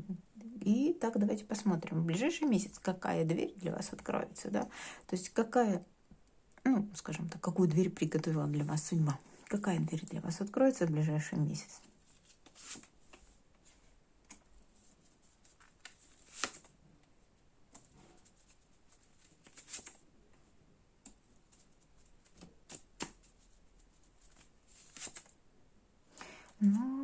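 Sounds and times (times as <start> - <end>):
cards shuffling and rustling: 11.8 - 16.7, 17.7 - 20.0, 21.1 - 25.4.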